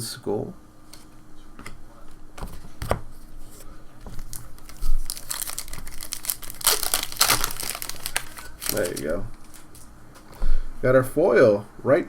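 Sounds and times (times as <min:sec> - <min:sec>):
wrapper tearing and crinkling: 0:04.1 - 0:09.9.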